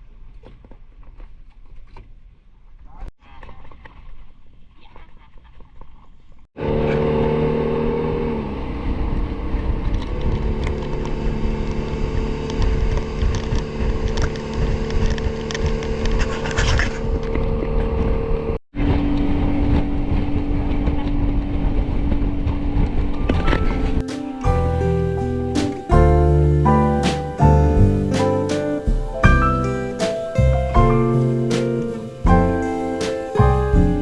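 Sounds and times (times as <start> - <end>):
engine running with low rumble: 6.6 - 18.6.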